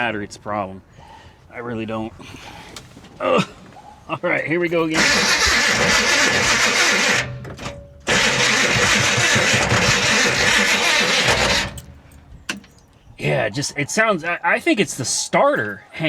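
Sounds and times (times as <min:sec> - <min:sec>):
car starter motor cranking: 0:04.8 - 0:12.3.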